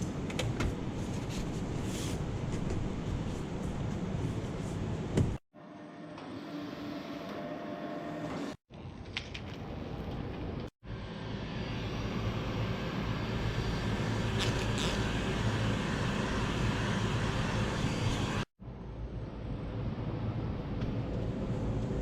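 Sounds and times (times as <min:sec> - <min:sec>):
machine rushing hiss and hum: 0:10.8 - 0:18.5.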